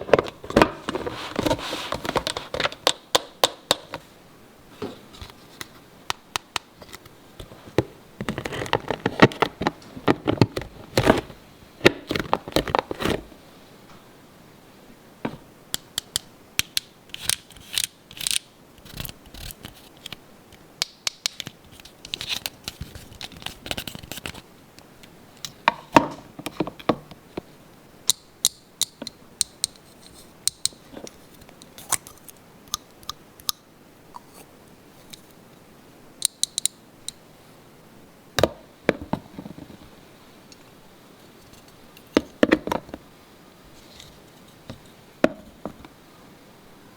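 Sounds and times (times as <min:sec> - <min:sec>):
sharp clicks and taps: 0:02.6 - 0:04.0.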